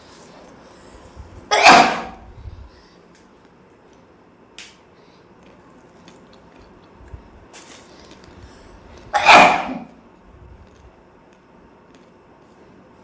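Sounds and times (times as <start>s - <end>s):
woman sneezing: 1.5s - 2.2s, 9.2s - 10.0s.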